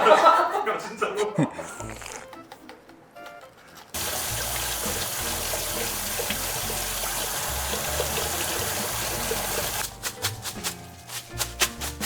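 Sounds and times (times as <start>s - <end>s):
running water: 3.9s - 10.8s.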